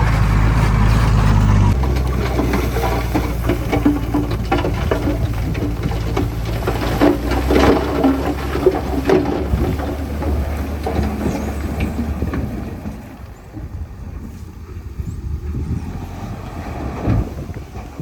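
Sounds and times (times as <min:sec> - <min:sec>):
machinery clanks and knocks: 0:00.0 - 0:14.3
heavy machine engine rumbling: 0:00.0 - 0:18.0.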